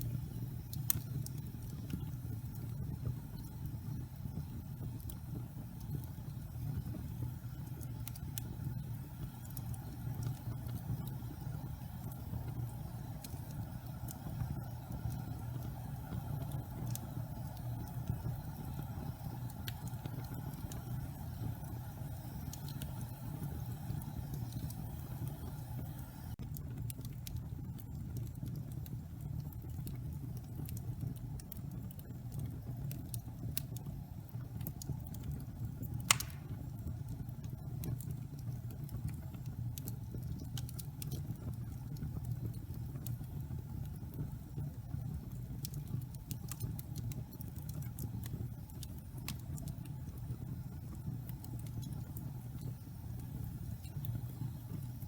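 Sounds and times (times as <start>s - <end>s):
wood fire crackling: 0.0s - 55.0s
loud pop of fire: 36.1s - 36.7s.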